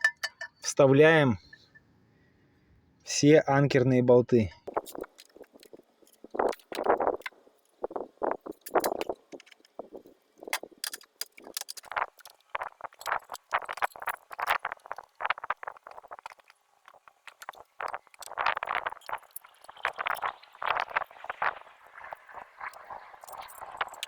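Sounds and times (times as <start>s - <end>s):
metal hardware clinking and scraping: 0.0s - 0.7s.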